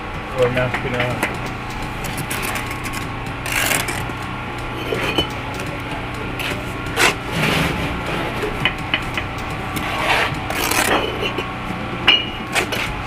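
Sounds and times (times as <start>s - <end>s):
steady low hum: 0.0s - 13.0s
trowel scraping on brick: 2.0s - 4.1s, 4.7s - 5.3s, 9.8s - 11.5s.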